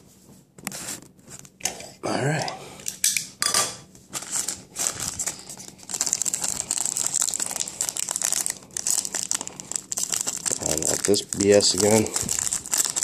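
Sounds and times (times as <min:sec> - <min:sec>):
plastic wrapping crinkling: 0:04.0 - 0:13.0
wrapping tearing: 0:04.1 - 0:13.0.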